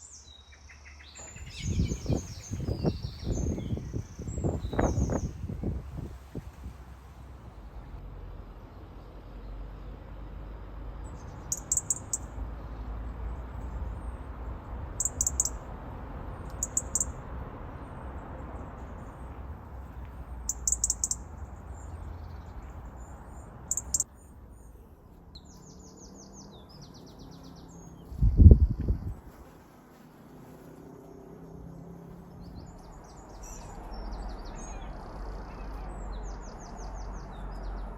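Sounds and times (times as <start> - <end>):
small bird chirping: 0.0 - 5.8, 11.1 - 12.4, 15.0 - 15.6, 16.5 - 17.2, 20.4 - 29.2
bird trills: 11.4 - 12.3, 15.0 - 15.6, 16.5 - 17.1, 20.5 - 21.3, 23.7 - 24.1.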